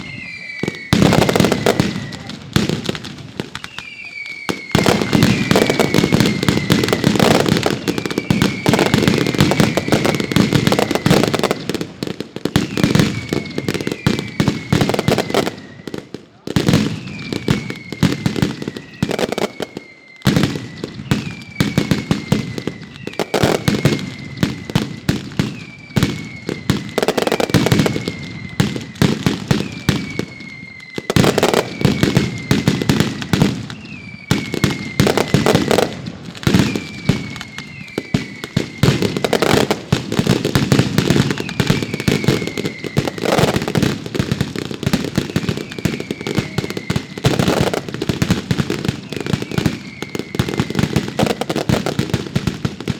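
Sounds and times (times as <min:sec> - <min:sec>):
falling whistle: 0:00.0 - 0:11.8, 0:12.5 - 0:52.9
fireworks bangs and crackling: 0:00.0 - 0:52.9.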